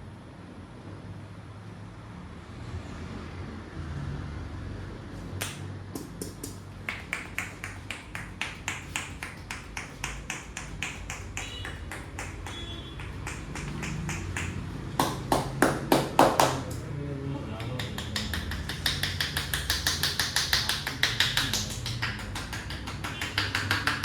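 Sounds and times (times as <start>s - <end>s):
hands tapping on head: 5.4s - 16.8s, 17.6s - 24.0s.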